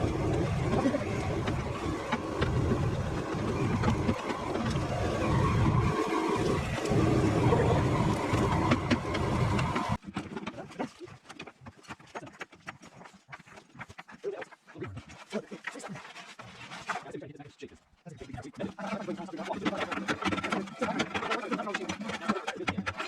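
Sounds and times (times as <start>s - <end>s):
large engine running: 0.0s - 10.0s.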